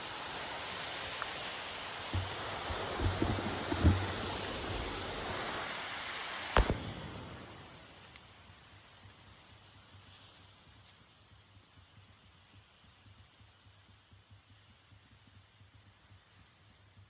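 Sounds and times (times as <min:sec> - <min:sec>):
surf: 0:00.0 - 0:08.2
wind: 0:00.0 - 0:17.0
dull knocks: 0:02.2 - 0:04.5.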